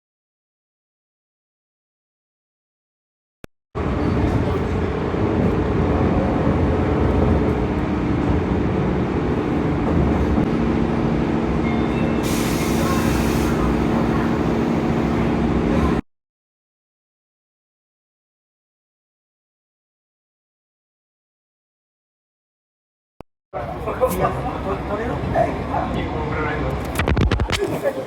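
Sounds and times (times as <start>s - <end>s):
train rumbling: 3.8s - 16.0s, 23.6s - 28.0s
hiss: 12.2s - 13.8s.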